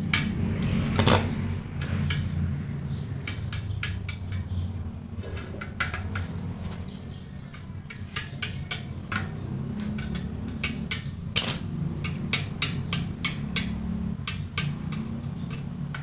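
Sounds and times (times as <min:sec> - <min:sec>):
metal taps and clinks: 0:00.1 - 0:02.3, 0:10.0 - 0:16.0.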